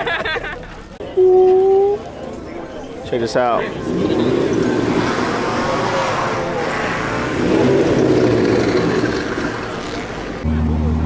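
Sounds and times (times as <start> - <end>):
car engine revving: 3.6 - 11.0.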